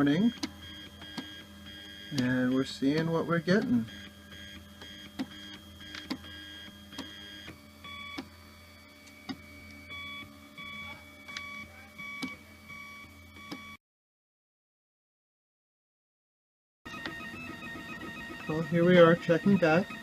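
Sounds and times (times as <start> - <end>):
printer stepper motors whining: 0.0 - 13.8, 16.9 - 20.0.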